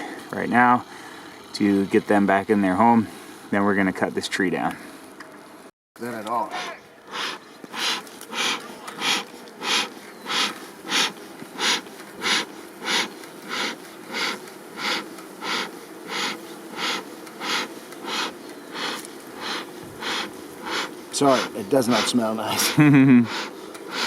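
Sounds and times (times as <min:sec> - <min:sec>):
smoker bellows puffing air: 0:06.0 - 0:24.0.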